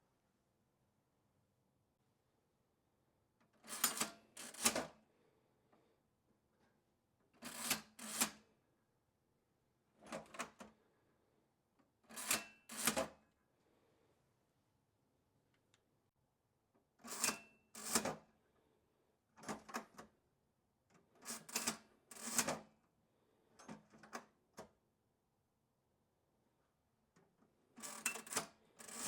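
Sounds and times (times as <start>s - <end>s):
cash register clattering: 3.7s - 4.8s, 27.8s - 29.0s.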